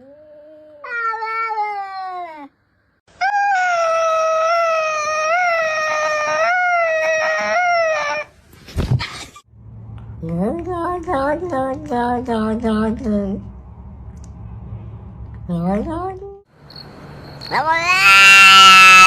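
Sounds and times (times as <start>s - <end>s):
cat yowling: 0.8s - 2.5s, 3.2s - 8.3s, 17.5s - 19.0s
cat meowing: 17.5s - 19.0s.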